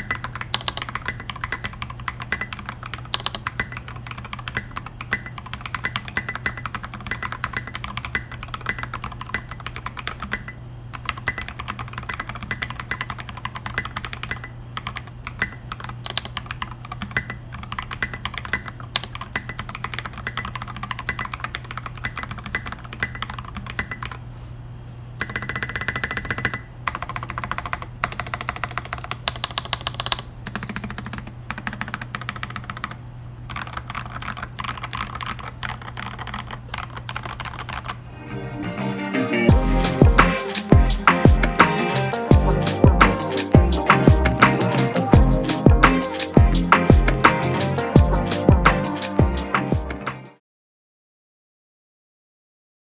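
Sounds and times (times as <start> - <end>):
fast typing on mechanical keyboard: 0.0 - 24.2, 25.2 - 38.0.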